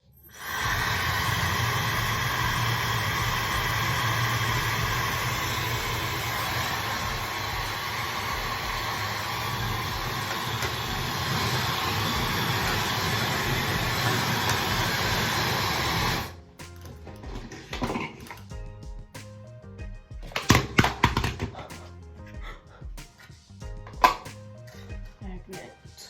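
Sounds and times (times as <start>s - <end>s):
faint high whine: 0.0s - 16.3s
hair dryer blowing air: 0.3s - 16.4s.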